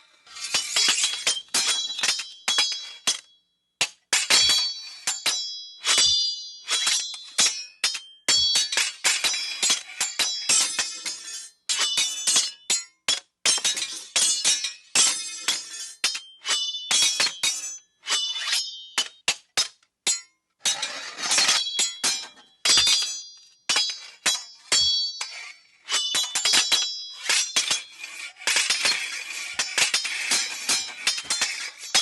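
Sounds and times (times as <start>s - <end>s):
sword blades clashing: 0.0s - 3.2s, 3.8s - 12.8s, 13.5s - 32.0s
blade scraping on blade: 0.2s - 2.8s, 15.0s - 18.8s, 20.6s - 23.1s, 23.8s - 32.0s.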